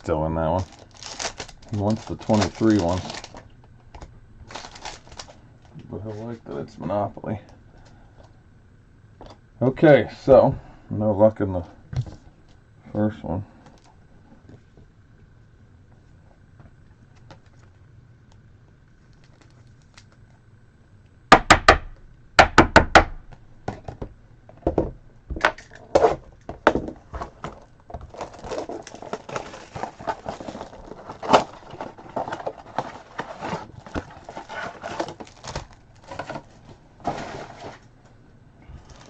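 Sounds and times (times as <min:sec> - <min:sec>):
wrapper crackling and tearing: 0:00.0 - 0:05.7, 0:19.0 - 0:20.3, 0:27.5 - 0:37.8.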